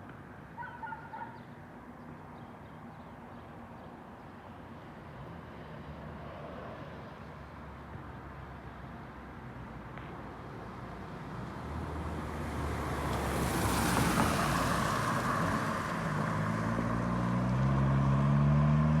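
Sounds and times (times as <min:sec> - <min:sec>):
vehicle passing with tyre noise: 0:09.5 - 0:19.0.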